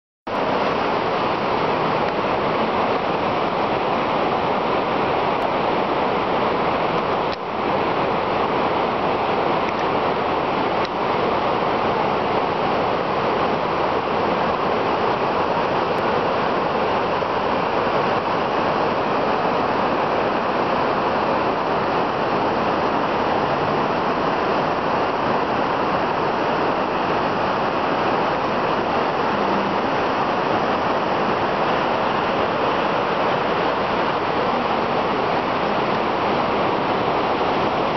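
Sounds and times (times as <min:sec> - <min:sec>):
river rushing white water: 0:00.3 - 0:37.9.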